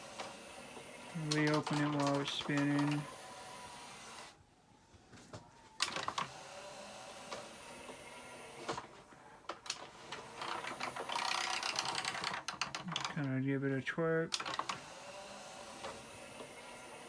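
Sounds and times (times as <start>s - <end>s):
cd changer motor whirr: 0.0s - 4.4s, 5.8s - 8.9s, 9.7s - 12.6s, 14.3s - 17.0s.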